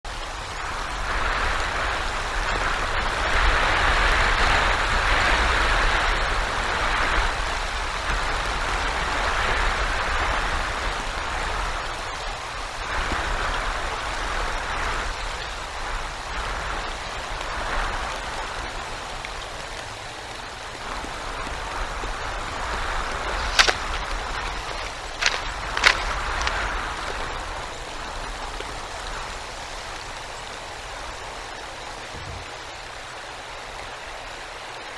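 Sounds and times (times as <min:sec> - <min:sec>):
snow and icy rain rushing: 0:00.0 - 0:34.9.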